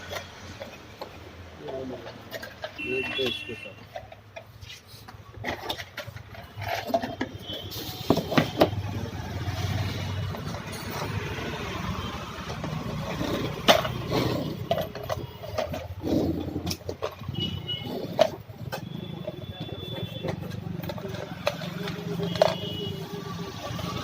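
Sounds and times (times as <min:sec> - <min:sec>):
knocks and clatter: 0:00.0 - 0:24.0.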